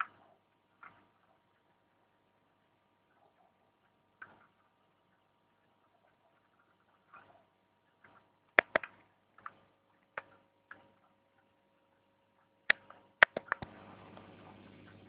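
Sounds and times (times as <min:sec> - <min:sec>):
faint steady hiss: 0:00.0 - 0:15.0
taser snapping clicks: 0:08.6 - 0:09.0, 0:12.7 - 0:13.7.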